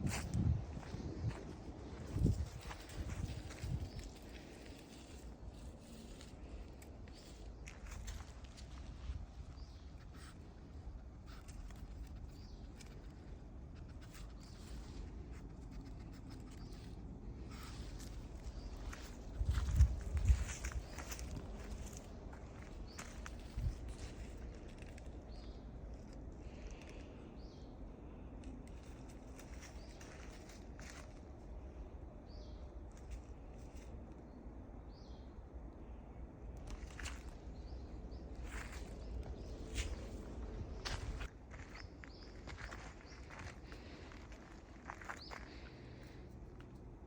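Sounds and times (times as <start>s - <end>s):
light footsteps on a path: 0.0s - 27.7s, 28.3s - 34.2s, 36.5s - 47.0s
steady low rumble: 0.0s - 47.0s.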